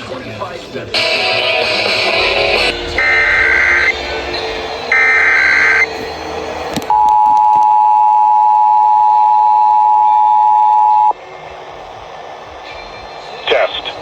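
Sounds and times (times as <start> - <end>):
two-tone alert signal: 2.2 - 5.9.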